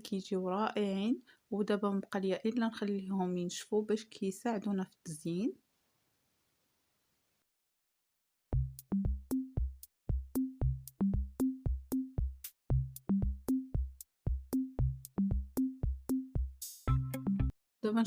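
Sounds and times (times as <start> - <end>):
bass line: 8.6 - 17.5
electronic drum-machine beat: 8.6 - 17.5.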